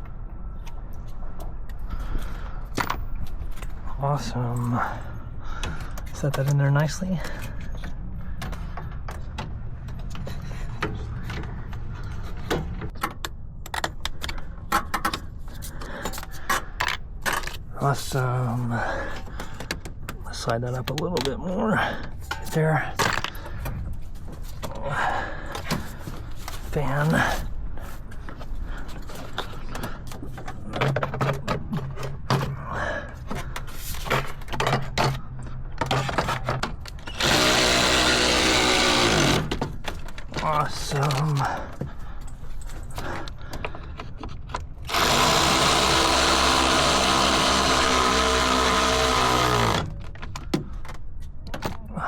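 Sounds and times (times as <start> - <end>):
tools and parts clattering: 5.6 - 17.8, 22.0 - 24.8, 27.9 - 37.3
cordless power tool running: 37.1 - 39.6, 44.8 - 49.9.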